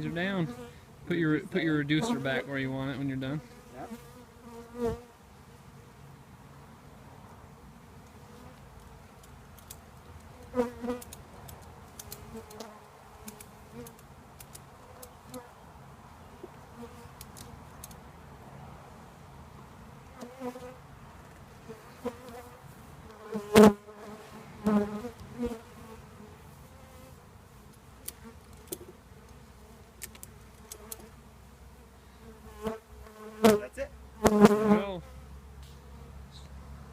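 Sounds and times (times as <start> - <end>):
single bee buzzing past: 3.4 - 5.2, 10.3 - 11.1, 12.1 - 14.0, 16.7 - 17.2, 20.1 - 20.8, 21.6 - 27.2, 30.5 - 36.9.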